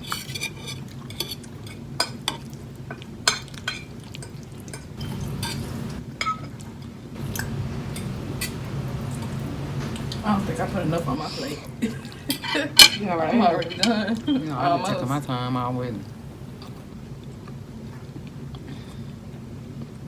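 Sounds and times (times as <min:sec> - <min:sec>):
low steady hum: 0:00.8 - 0:20.0
forks clinking on plates: 0:03.2 - 0:06.6, 0:07.2 - 0:10.5, 0:12.0 - 0:14.1.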